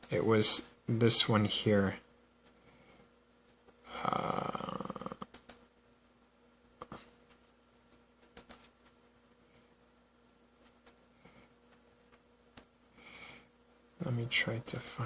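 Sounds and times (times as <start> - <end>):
mouse or keyboard clicks: 5.2 - 5.6, 8.2 - 9.0.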